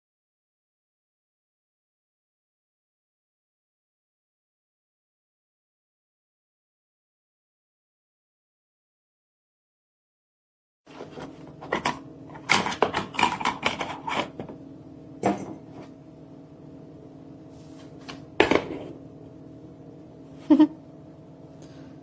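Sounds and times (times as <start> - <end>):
steady electrical hum: 10.9 - 22.0
objects clattering when set down: 15.2 - 15.9, 18.0 - 18.9.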